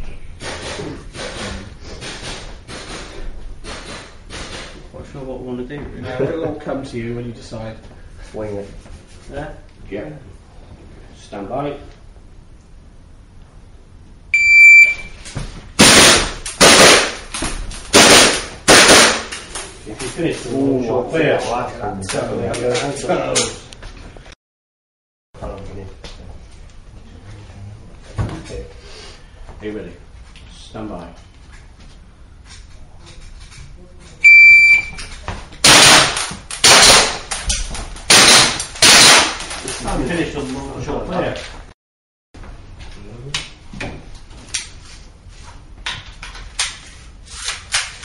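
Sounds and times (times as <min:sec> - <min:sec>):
shot timer beep: 0:14.4 - 0:15.2, 0:34.2 - 0:35.0
gunshots: 0:15.8 - 0:17.2, 0:17.9 - 0:19.3, 0:35.6 - 0:37.2, 0:38.1 - 0:39.4.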